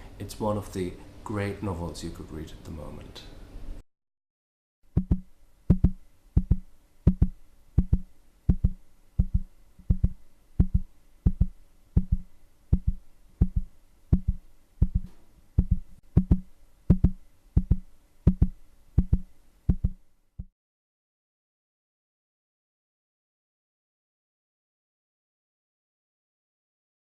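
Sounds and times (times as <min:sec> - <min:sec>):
heartbeat thumps: 0:04.9 - 0:20.5.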